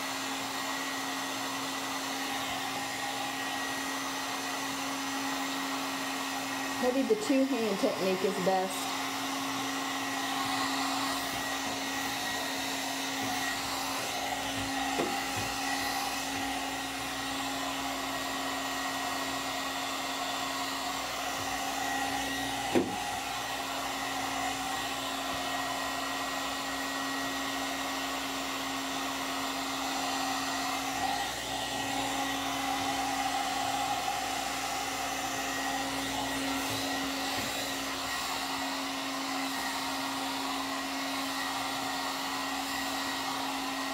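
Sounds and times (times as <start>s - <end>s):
hairdryer blowing: 0.0s - 43.9s.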